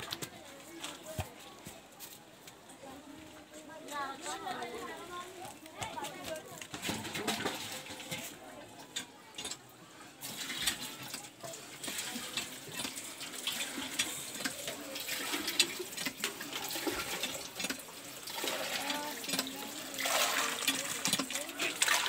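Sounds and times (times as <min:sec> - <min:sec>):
water gushing from tap: 0:10.2 - 0:22.0
water splashing: 0:10.2 - 0:22.0.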